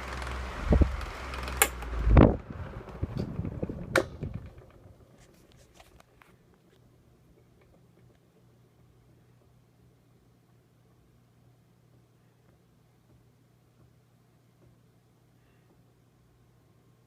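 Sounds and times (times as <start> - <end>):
fan motor hum and blade hiss: 0.0 - 17.0
fan switch click: 1.0 - 2.3, 3.1 - 4.4.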